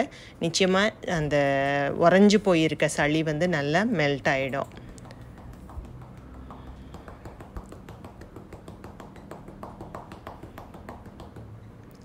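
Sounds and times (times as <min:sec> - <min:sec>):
cupped hands patting back: 0:04.7 - 0:12.0.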